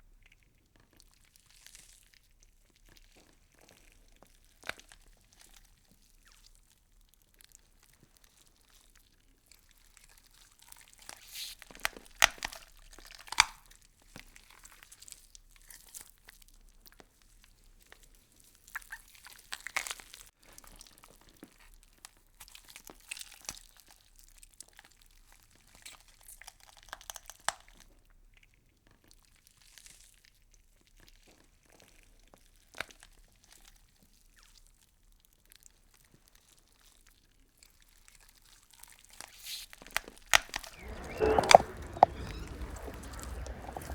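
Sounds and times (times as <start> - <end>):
insects chewing leaves: 40.6 - 43.9.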